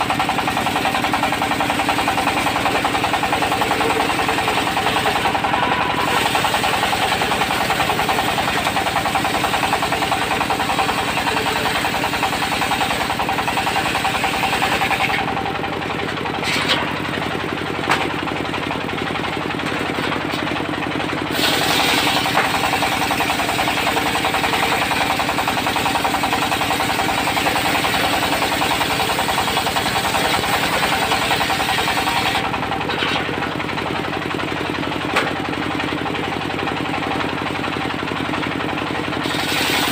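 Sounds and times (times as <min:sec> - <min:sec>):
saw blade cutting wood: 0:00.0 - 0:15.3, 0:16.4 - 0:17.0, 0:21.3 - 0:33.3, 0:39.2 - 0:39.9
diesel engine running: 0:00.0 - 0:39.9.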